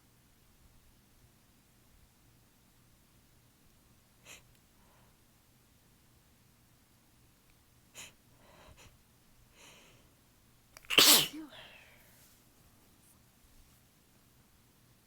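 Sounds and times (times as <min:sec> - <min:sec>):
person sneezing: 0:10.8 - 0:11.9.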